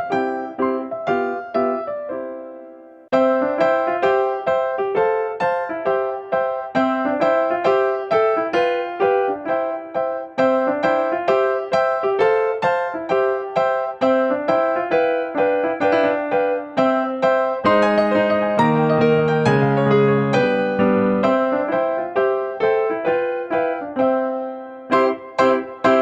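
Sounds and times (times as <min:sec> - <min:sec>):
bouncy keyboard tune: 0:00.0 - 0:26.0.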